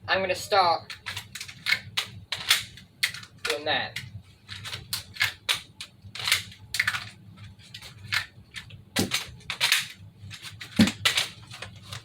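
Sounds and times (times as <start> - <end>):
toy gun clicks and clacks: 0.9 - 3.6, 4.6 - 7.1, 9.0 - 12.0.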